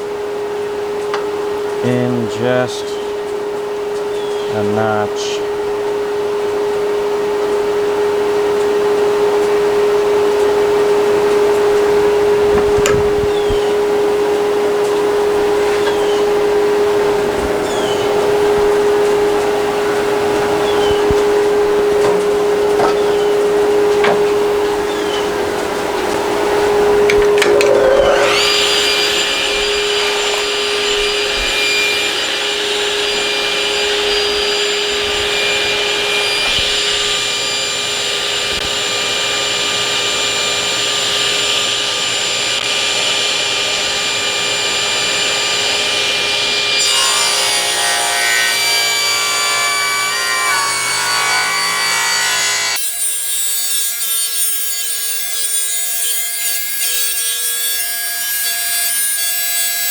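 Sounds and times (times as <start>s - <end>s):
table saw motor whine: 3.0s - 59.9s
saw blade cutting wood: 17.6s - 25.2s, 26.0s - 59.9s.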